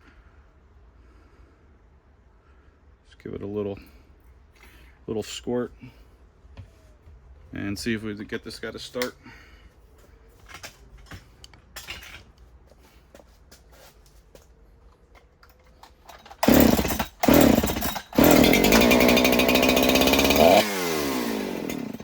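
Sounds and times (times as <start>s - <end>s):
chainsaw engine starting and dying: 15.7s - 22.0s.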